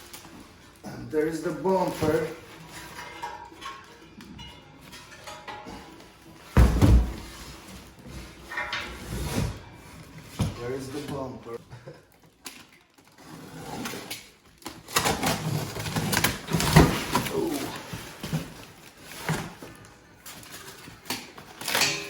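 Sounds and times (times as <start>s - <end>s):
rustling of packaging: 0.0s - 22.0s
knocking of heavy parts: 6.4s - 7.7s.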